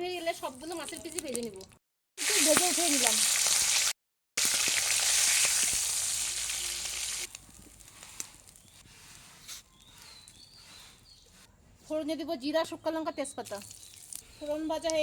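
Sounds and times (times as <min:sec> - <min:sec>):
oil sizzling with frying food: 0:02.2 - 0:08.6.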